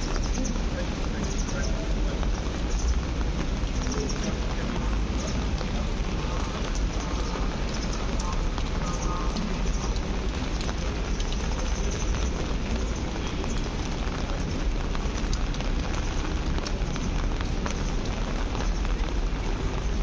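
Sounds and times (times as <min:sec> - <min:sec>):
rain hissing on street: 0:00.0 - 0:20.0
raindrop ticks: 0:00.0 - 0:20.0.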